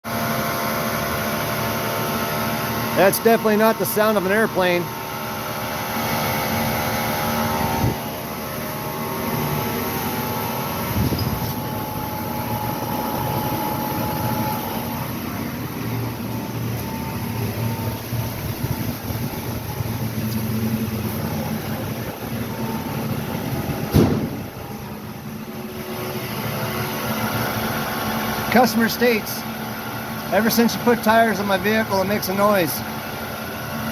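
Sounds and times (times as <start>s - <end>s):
car engine: 0.1s - 33.9s
tire and road hum: 0.1s - 33.9s
short knock: 23.9s - 24.5s.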